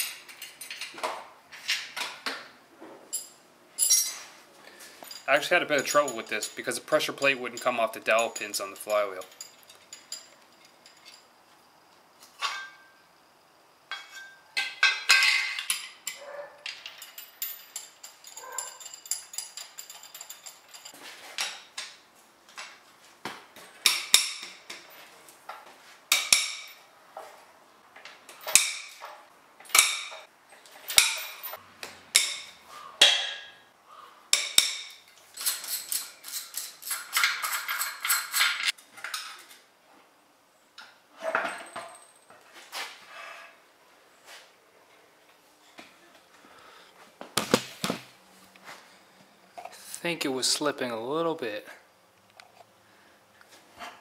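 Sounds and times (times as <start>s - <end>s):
hand tools clinking on metal: 0.0s - 1.0s, 3.1s - 11.3s, 12.4s - 12.9s, 13.9s - 21.9s, 28.3s - 31.6s, 34.3s - 39.5s.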